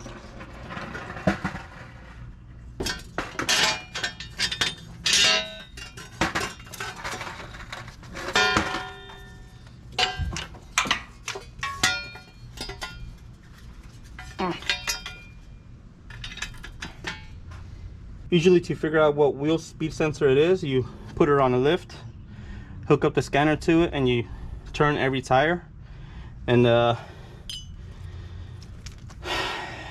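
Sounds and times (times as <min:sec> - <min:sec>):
metal tools clinking and clanking: 0:02.8 - 0:15.5, 0:16.1 - 0:17.4, 0:27.5 - 0:27.8.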